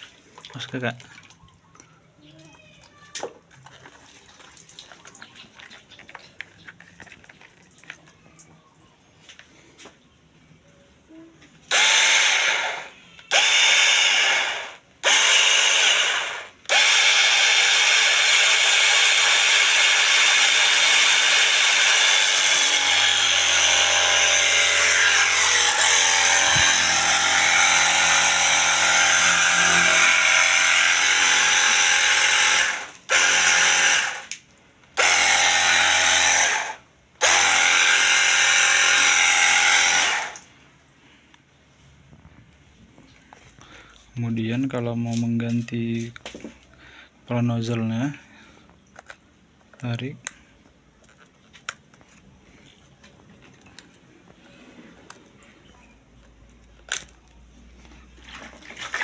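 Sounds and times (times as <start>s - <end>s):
pressure washer motor whining: 11.7s - 34.3s, 35.0s - 40.4s.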